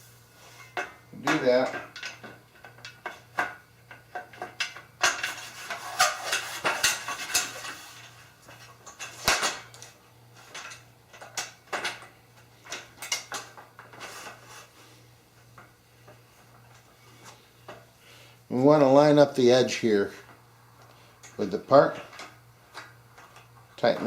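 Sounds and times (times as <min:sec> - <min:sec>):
metal hardware clinking and scraping: 0:00.6 - 0:14.7.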